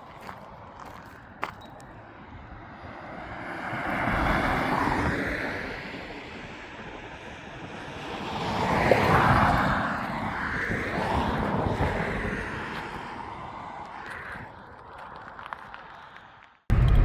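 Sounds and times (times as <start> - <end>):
passing traffic: 0.0 - 17.0
wind on microphone: 8.6 - 13.1.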